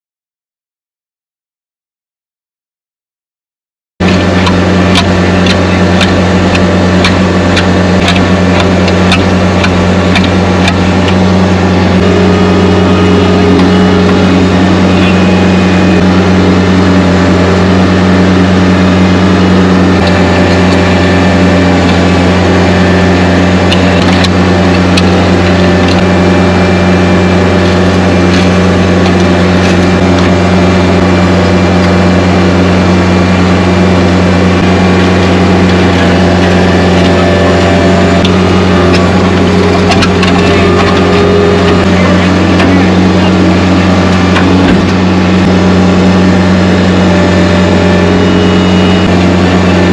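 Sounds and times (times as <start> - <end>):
diesel engine running: 4.0 - 49.9.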